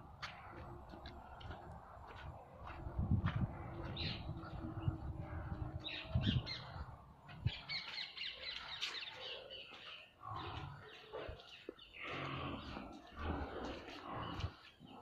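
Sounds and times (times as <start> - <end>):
pigs grunting and squealing: 12.0 - 14.6.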